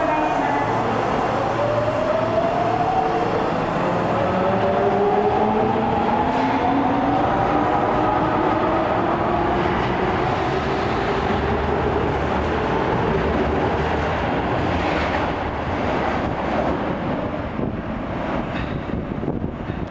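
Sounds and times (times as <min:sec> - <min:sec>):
train wheel and running noise: 0:09.7 - 0:19.9.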